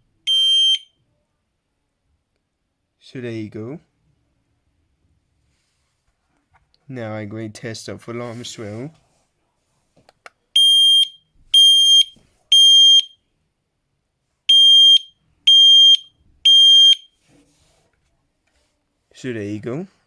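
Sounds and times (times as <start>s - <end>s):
smoke alarm beeping: 0.3s - 0.9s, 10.6s - 13.2s, 14.5s - 17.1s.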